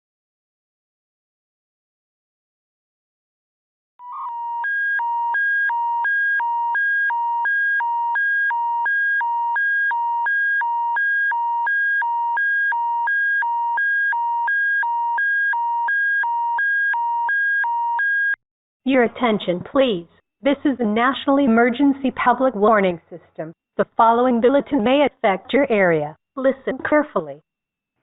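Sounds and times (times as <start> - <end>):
alternating two-tone electronic warble: 4.0 - 11.6.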